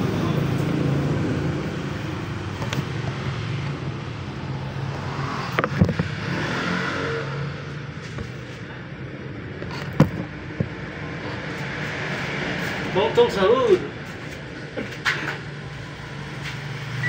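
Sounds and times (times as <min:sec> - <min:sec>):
vehicle engine running: 0:00.0 - 0:06.5
street noise: 0:00.0 - 0:17.0.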